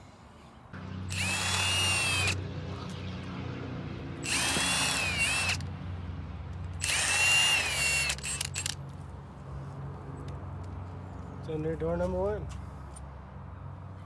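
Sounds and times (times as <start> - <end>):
power drill whining: 1.1 - 2.4, 4.2 - 5.6, 6.8 - 8.8.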